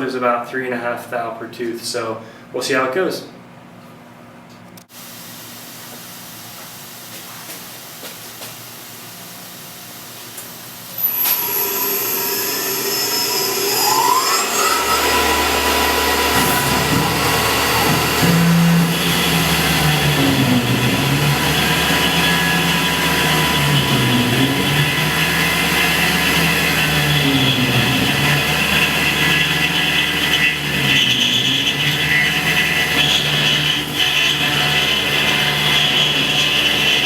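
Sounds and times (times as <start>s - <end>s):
milling machine hum: 10.1s - 37.0s
high whine: 10.9s - 37.0s.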